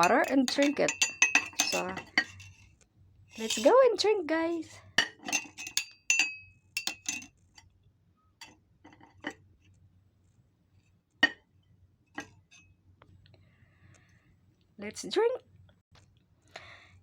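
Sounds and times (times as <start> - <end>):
metal spoon clinking on glass: 0.0 - 2.5, 3.4 - 3.8, 5.0 - 7.4.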